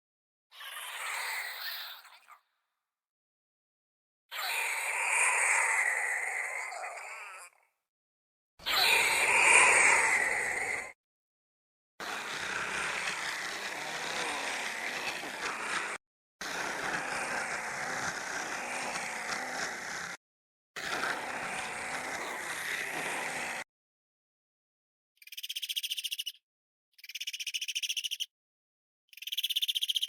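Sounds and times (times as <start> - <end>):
harsh dinosaur creature call: 4.3 - 7.7, 8.6 - 11.0, 12.0 - 20.2
noisy creature calls: 4.3 - 7.7, 8.6 - 11.0, 12.0 - 20.2, 20.8 - 23.7.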